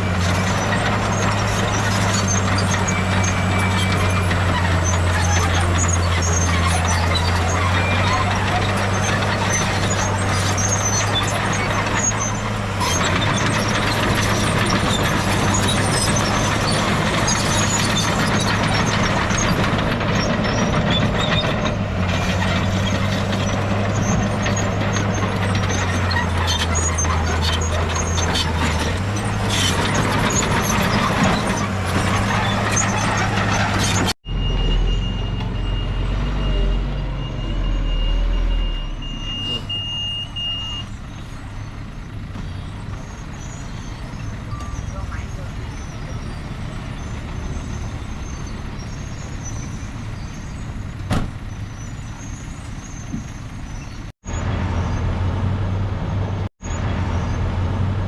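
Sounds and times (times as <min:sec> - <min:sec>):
machinery clanking and rattling: 0:00.0 - 0:34.2
heavy diesel machinery engine drone: 0:00.0 - 0:58.0.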